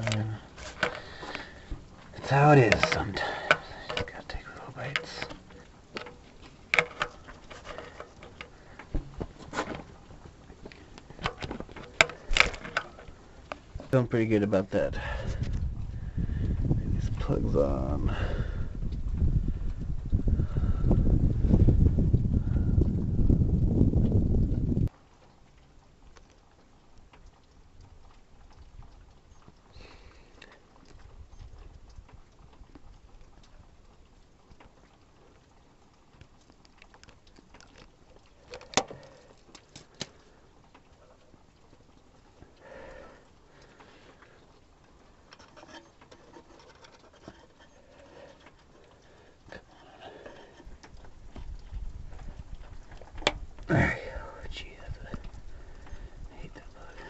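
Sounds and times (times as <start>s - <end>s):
tools clicking and knocking: 0.0s - 4.2s, 4.9s - 9.2s, 11.2s - 13.6s, 38.5s - 39.0s
dull thuds: 5.0s - 13.0s.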